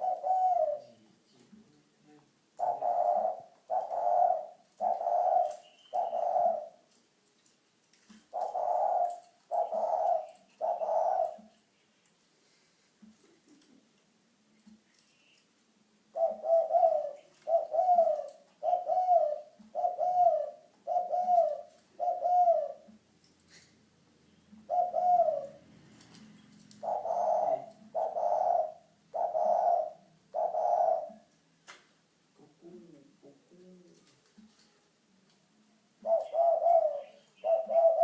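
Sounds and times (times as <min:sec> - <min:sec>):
dove cooing: 0:00.0 - 0:01.0, 0:02.6 - 0:07.0, 0:08.2 - 0:11.7, 0:16.1 - 0:23.8, 0:24.5 - 0:31.3, 0:32.4 - 0:34.6, 0:36.0 - 0:38.0.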